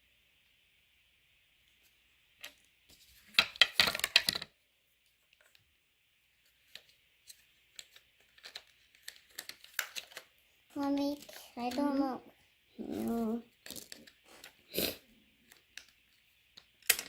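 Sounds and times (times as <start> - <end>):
plastic pieces clicking and clattering: 3.3 - 4.5, 7.7 - 10.3, 13.0 - 14.6, 15.4 - 17.0.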